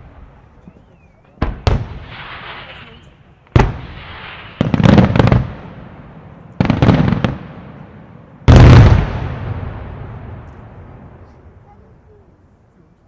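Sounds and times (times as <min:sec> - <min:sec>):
loud firework bangs: 0:01.4 - 0:11.4
firework crackling: 0:01.4 - 0:11.6.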